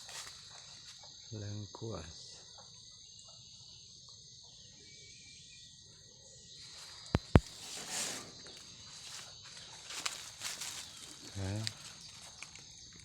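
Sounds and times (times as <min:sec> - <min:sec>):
crickets chirring: 0:00.0 - 0:13.0
sharp clicks: 0:07.1 - 0:07.5.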